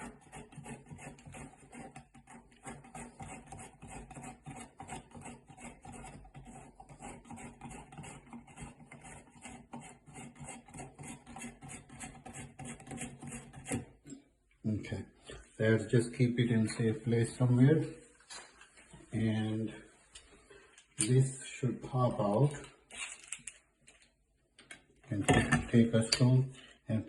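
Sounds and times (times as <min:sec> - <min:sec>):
rhythmic rasping of threaded part: 0:00.0 - 0:13.9.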